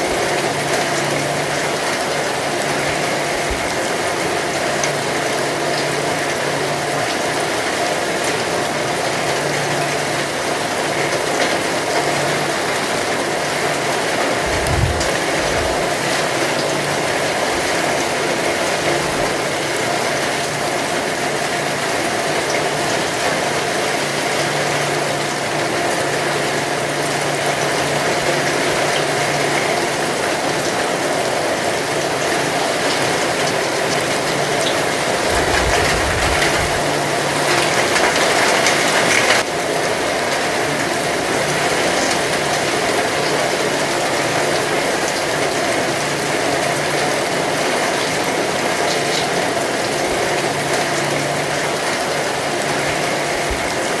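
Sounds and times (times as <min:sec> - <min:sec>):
heavy rain hissing: 0:00.0 - 0:54.0
low rumble: 0:14.4 - 0:15.8.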